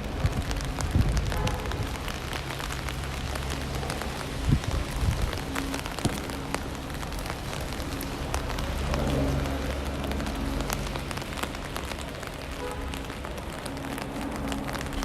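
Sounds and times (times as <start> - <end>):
rain tapping on an umbrella: 0.0 - 15.0.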